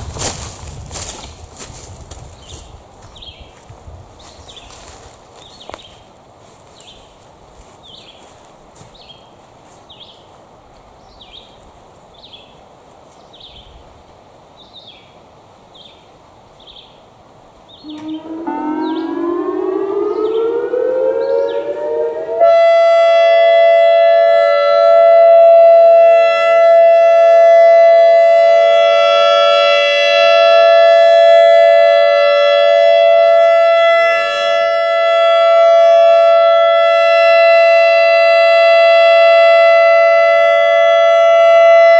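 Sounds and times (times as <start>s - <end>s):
outdoor background: 0.0s - 41.9s
high repeating chirp: 17.8s - 22.8s
electronic storm siren: 17.8s - 41.9s.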